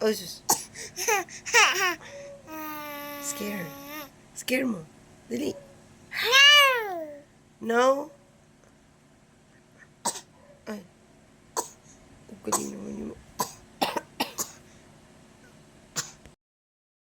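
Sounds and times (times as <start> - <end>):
toddler coughing: 0.5 - 2.0, 10.1 - 10.3, 11.6 - 11.8, 12.5 - 12.7, 13.4 - 14.6, 16.0 - 16.2.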